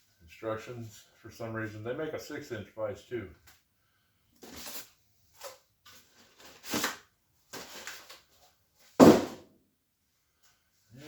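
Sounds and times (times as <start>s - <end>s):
packaging rustles and scrapes: 4.4s - 8.6s
heavy thud: 9.0s - 9.5s.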